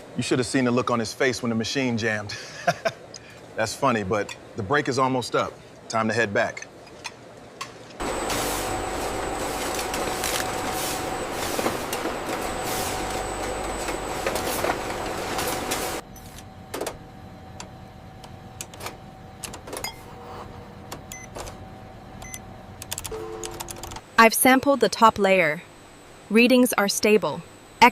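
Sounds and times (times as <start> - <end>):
low machine hum: 8.0 - 27.9.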